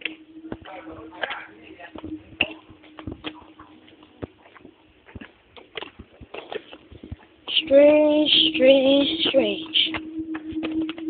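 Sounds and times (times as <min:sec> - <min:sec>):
faint low hum: 0:00.0 - 0:11.0
person's voice: 0:07.5 - 0:10.0.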